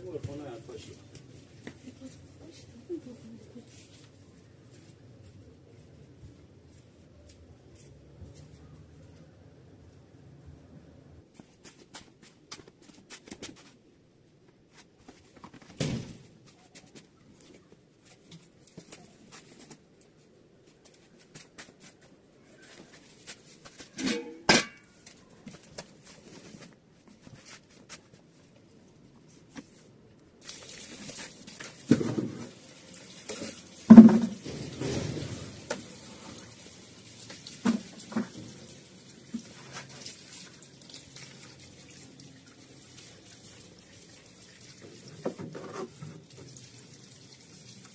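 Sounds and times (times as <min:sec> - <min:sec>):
knocks and clatter in a sink: 0:33.3 - 0:35.9, 0:37.6 - 0:38.6, 0:45.2 - 0:46.2
water tap running into a sink: 0:35.5 - 0:45.3, 0:45.9 - 0:47.9.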